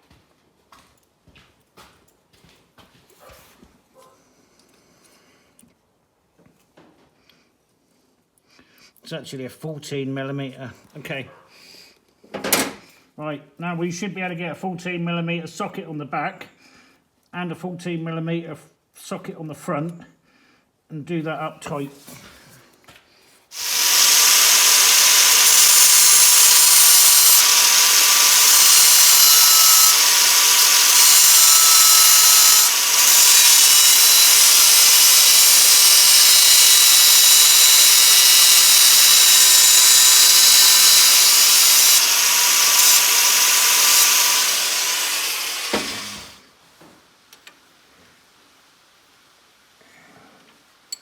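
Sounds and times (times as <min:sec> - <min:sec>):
high-pitched power tool running: 0:23.6 - 0:46.4.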